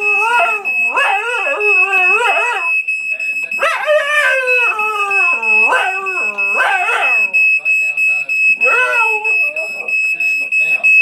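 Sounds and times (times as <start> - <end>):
dog howling: 0.0 - 2.7, 3.6 - 7.3, 8.6 - 9.9
smoke alarm tone: 0.0 - 11.0.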